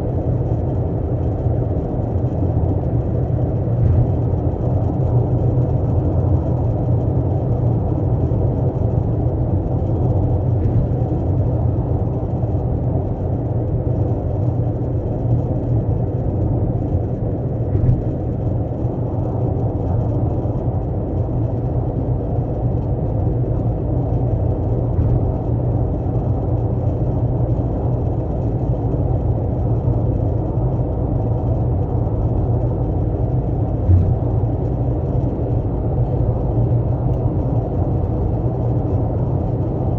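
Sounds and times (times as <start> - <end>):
car driving rumble: 0.0 - 39.9.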